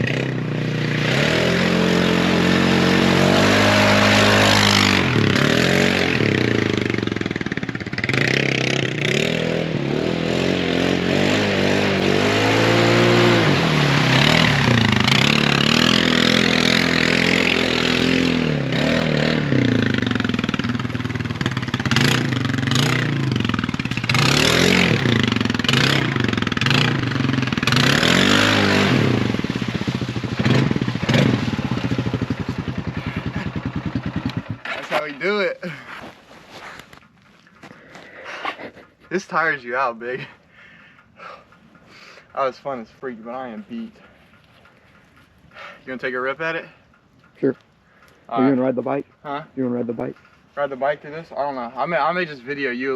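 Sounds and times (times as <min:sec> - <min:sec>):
atv engine revving: 0:00.0 - 0:37.7.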